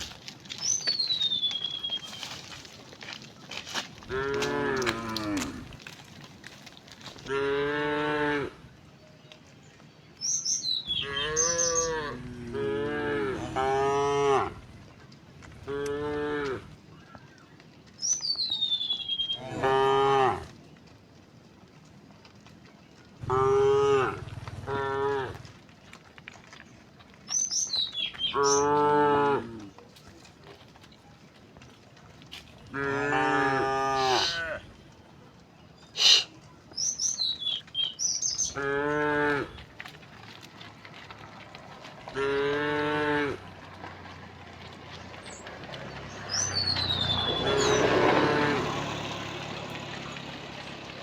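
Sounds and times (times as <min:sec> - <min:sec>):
cows mooing: 0:04.0 - 0:05.9, 0:07.2 - 0:08.6, 0:10.9 - 0:14.6, 0:15.6 - 0:16.8, 0:19.3 - 0:20.5, 0:23.2 - 0:25.5, 0:28.3 - 0:29.7, 0:32.7 - 0:34.6, 0:38.4 - 0:39.6, 0:42.1 - 0:43.7, 0:46.1 - 0:49.4.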